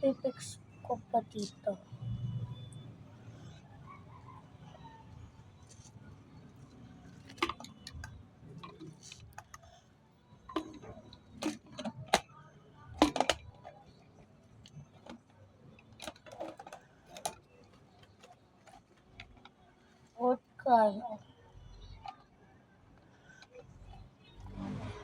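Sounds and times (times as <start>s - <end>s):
objects clicking and tapping: 5.6s - 9.8s, 10.4s - 20.2s.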